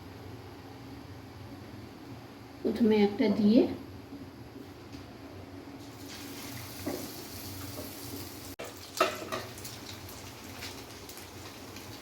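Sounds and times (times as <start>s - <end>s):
chicken frying in hot oil: 5.8s - 12.0s.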